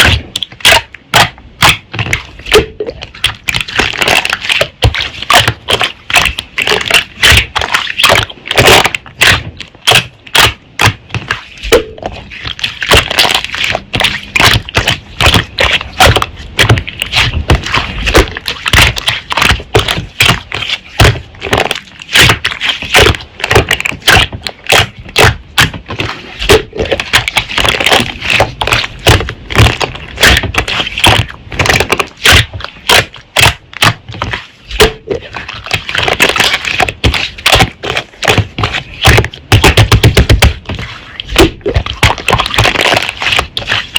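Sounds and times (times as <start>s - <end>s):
sharp pops and crackles: 0.0s - 43.9s
slime squished by hand: 0.0s - 43.9s.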